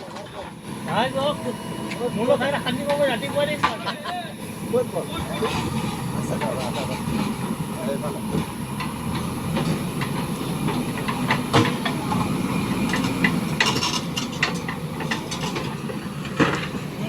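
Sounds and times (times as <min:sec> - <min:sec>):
diesel engine under load: 0:00.0 - 0:17.0
metallic clanks and knocks: 0:12.9 - 0:16.8.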